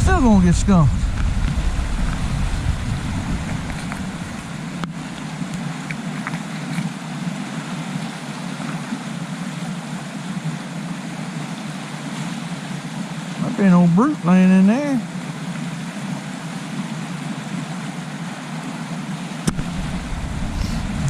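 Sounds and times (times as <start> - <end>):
fast-flowing stream rushing: 0.0 - 21.0.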